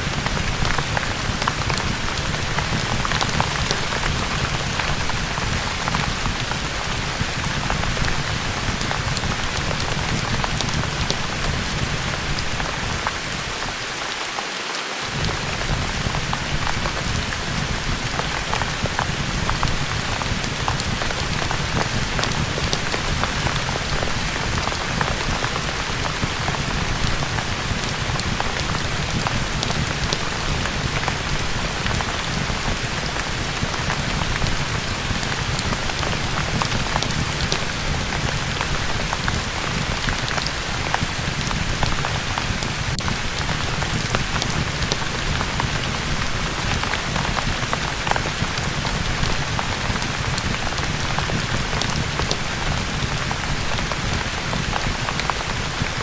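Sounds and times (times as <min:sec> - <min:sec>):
steady rain: 0:00.0 - 0:56.0.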